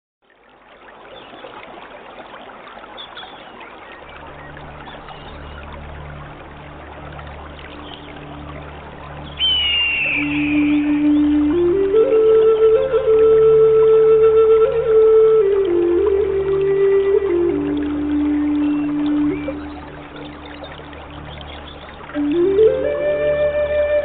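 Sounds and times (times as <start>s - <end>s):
stream water trickling: 0.2s - 24.0s
low musical drone: 4.0s - 24.0s
faint bird chirps: 9.3s - 11.4s
high whistled note: 9.4s - 12.5s.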